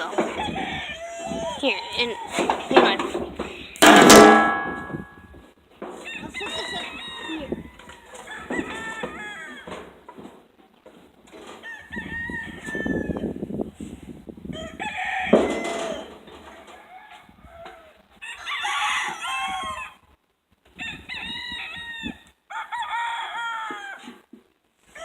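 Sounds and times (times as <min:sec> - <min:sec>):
roosters crowing: 0:00.0 - 0:02.6, 0:06.0 - 0:10.1, 0:11.5 - 0:13.4, 0:14.5 - 0:20.0, 0:20.8 - 0:24.3
sharp knock: 0:03.8 - 0:05.2.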